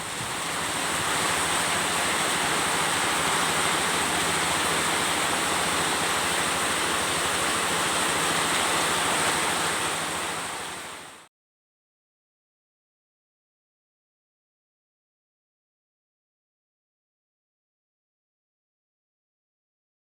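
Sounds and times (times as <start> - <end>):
surf: 0.0 - 11.2.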